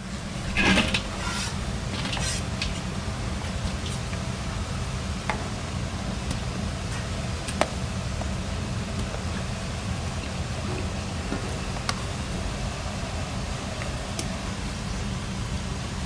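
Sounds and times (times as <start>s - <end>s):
ventilation hum: 0.0s - 16.0s
dishes clinking: 0.2s - 4.0s.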